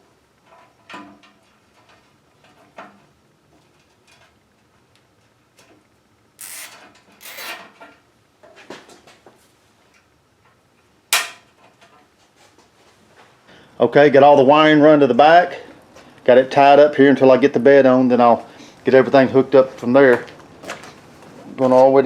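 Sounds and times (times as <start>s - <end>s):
short rasping rubs: 6.4s - 7.6s.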